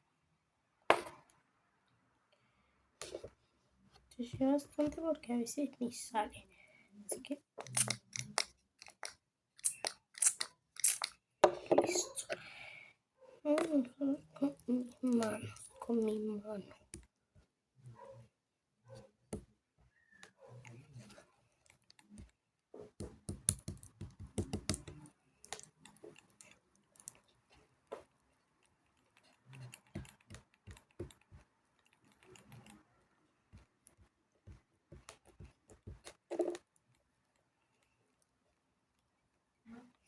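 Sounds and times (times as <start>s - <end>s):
slime squishing by hand: 7.2s - 11.1s.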